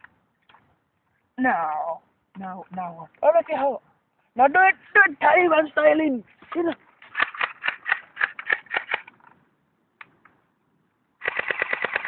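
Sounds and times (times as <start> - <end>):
bb gun firing: 7.1 - 9.1, 11.2 - 12.0.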